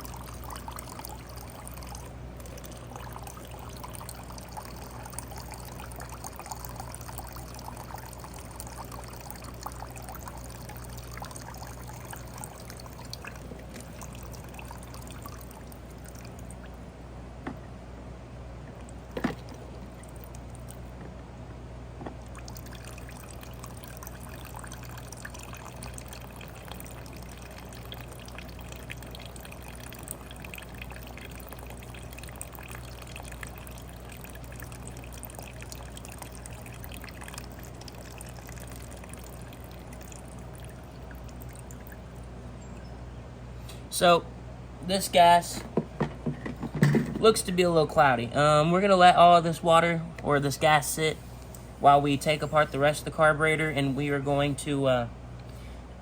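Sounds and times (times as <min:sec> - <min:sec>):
gasoline trickling into a cup: 0:00.0 - 0:16.9, 0:18.7 - 0:21.0, 0:22.1 - 0:43.9.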